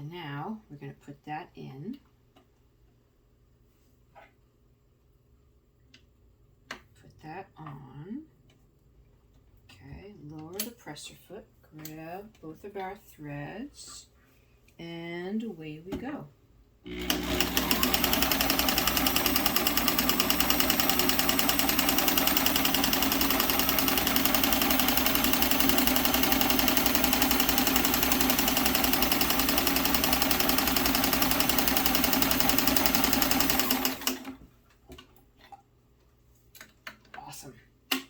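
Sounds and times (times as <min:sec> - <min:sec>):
sewing machine stitching: 0:16.9 - 0:34.4.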